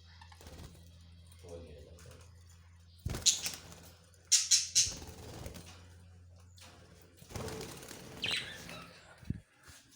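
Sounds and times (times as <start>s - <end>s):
budgerigars chirping: 3.1s - 3.6s, 4.3s - 5.0s, 8.2s - 8.9s.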